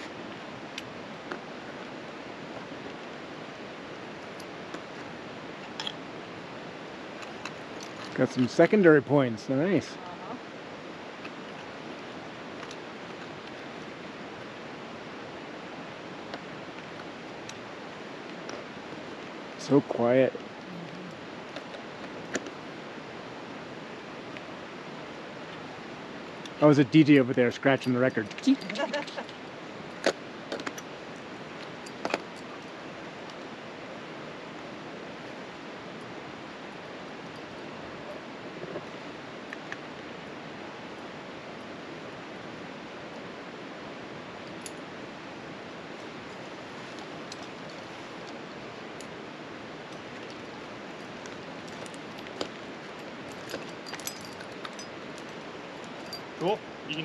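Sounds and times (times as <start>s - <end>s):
steady rushing hiss: 0.0s - 57.0s
metal climbing gear clicking on rock: 26.5s - 29.3s, 50.0s - 56.3s.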